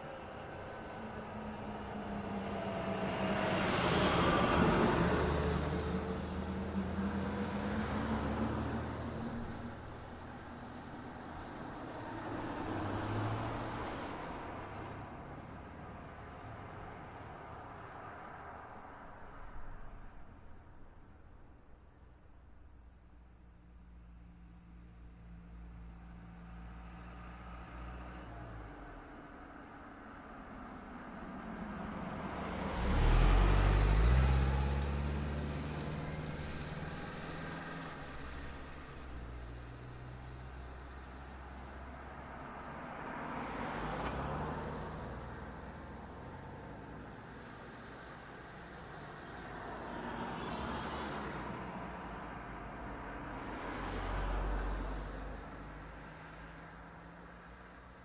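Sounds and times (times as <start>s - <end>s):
cars driving past: 0.0s - 20.9s, 26.0s - 57.8s
car driving past: 31.1s - 46.9s, 49.4s - 56.4s.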